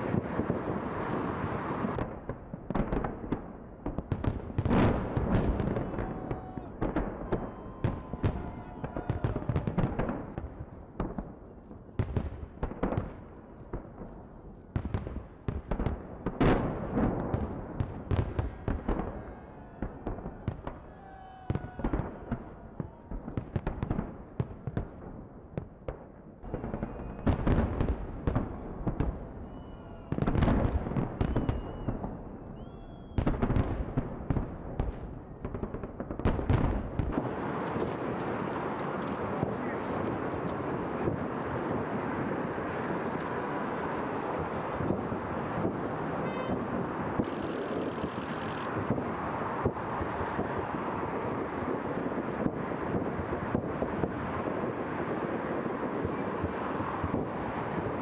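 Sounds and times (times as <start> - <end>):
fireworks bursts and crackles: 0.0 - 58.0
firework whistles: 26.4 - 27.6, 28.8 - 30.5, 31.1 - 33.4.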